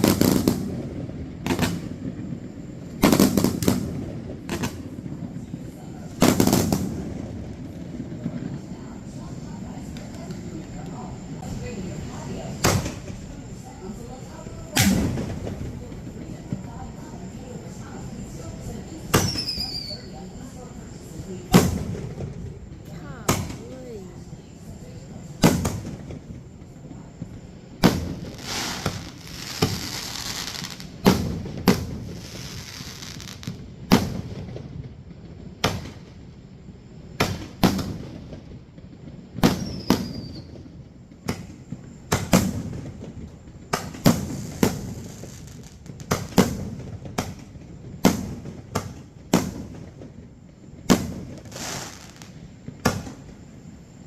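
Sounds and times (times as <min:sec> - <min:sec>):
fireworks bangs: 0:00.0 - 0:54.0
fireworks crackling: 0:00.0 - 0:54.0.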